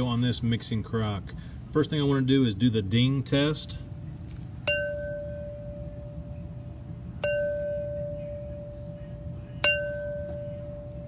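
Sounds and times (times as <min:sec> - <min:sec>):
crock tapped ringing: 0:07.2 - 0:08.9, 0:09.6 - 0:11.0.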